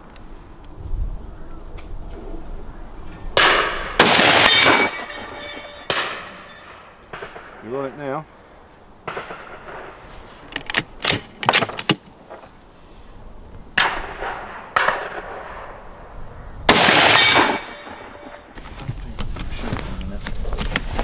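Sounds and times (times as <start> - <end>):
rifle shots: 3.4 - 7.9, 9.0 - 10.0, 10.8 - 12.4, 13.8 - 15.8, 16.7 - 18.6
loud ringing gunshot: 3.4 - 8.0, 9.1 - 10.0, 13.8 - 15.8, 16.7 - 18.6
rifle bolt clicks: 10.5 - 12.1.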